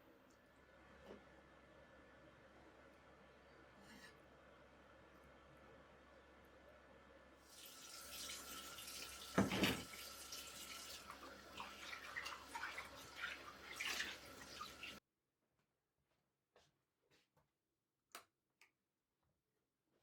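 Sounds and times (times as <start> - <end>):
kitchen tap running into sink: 7.5 - 15.0.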